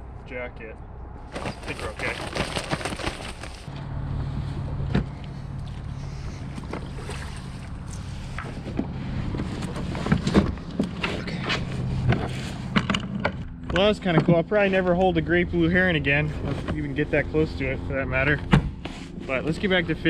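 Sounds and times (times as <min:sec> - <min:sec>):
water noise: 0:06.5 - 0:08.8.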